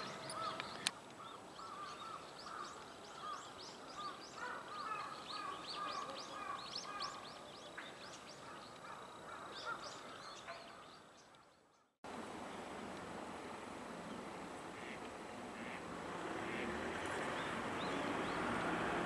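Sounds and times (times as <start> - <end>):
birds chirping: 0.0 - 11.8
outdoor hiss: 12.1 - 19.0.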